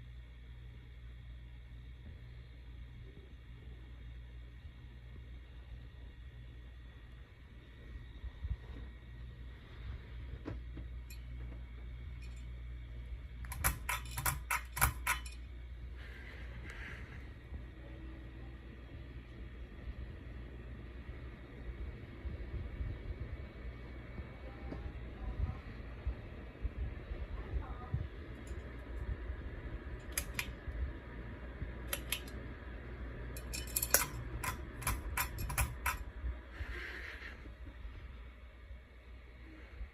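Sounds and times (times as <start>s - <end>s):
steady low hum: 0.0s - 39.9s
sharp metallic clicks: 13.4s - 15.4s, 33.4s - 36.0s.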